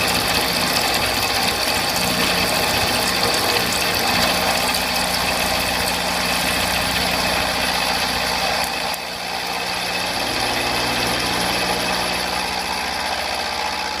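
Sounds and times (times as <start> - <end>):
machine drive hum: 0.0 - 14.0
milling machine cutting steel: 0.0 - 14.0.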